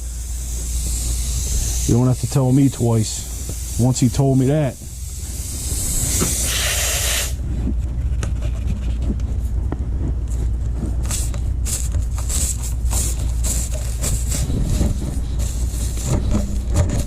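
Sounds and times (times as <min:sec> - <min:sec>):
air hissing out of tire: 0:00.0 - 0:07.4, 0:11.0 - 0:16.8
steady low rumble: 0:00.0 - 0:17.0.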